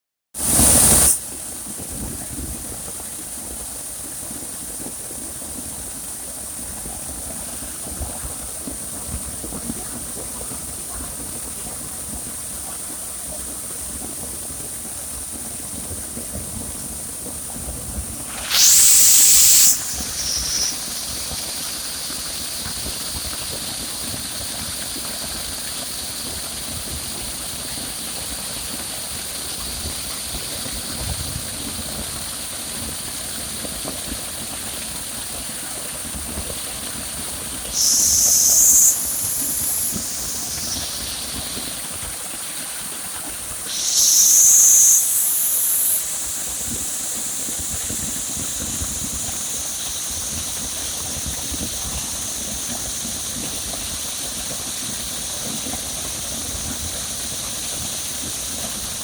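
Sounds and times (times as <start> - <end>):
high-pitched hissing drone: 0.4 - 1.2, 18.2 - 25.8, 37.4 - 59.0
loud upward sweeping hiss: 0.4 - 1.3, 18.2 - 23.0, 37.6 - 54.2
lower steady tone: 37.8 - 41.9.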